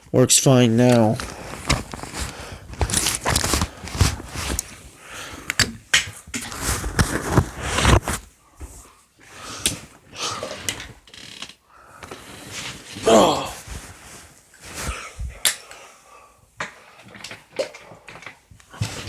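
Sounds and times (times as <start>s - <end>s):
handling clicks knocks and rustles: 0.8s - 4.8s.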